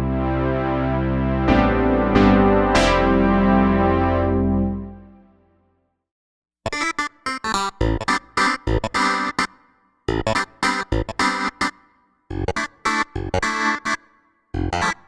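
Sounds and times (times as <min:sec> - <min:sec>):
held synth chord: 0:00.0 - 0:05.3
staccato synth chord stabs: 0:01.3 - 0:05.2, 0:07.8 - 0:09.2, 0:10.1 - 0:11.7, 0:12.3 - 0:14.0, 0:14.6 - 0:15.0.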